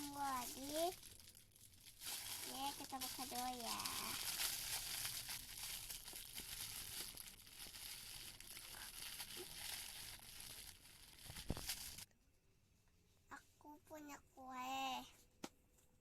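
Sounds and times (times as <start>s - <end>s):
wrapping crinkling and tearing: 0.0s - 12.1s.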